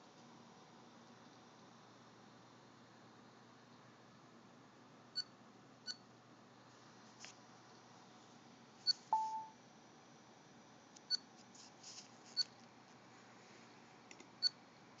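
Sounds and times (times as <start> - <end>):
brief lower beep: 9.2 - 9.6
laptop high chirps: 9.2 - 9.6.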